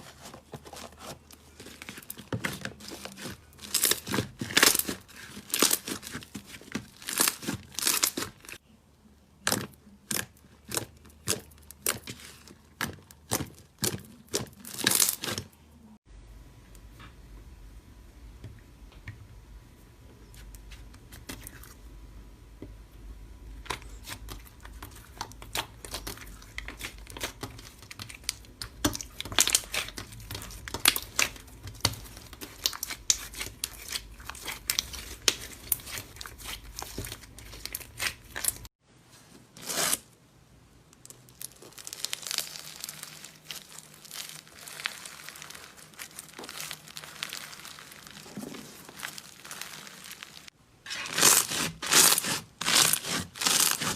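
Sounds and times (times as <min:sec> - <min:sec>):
slime crackling and popping: 0:01.6 - 0:08.6, 0:09.4 - 0:15.4, 0:23.6 - 0:38.7, 0:41.0 - 0:53.9.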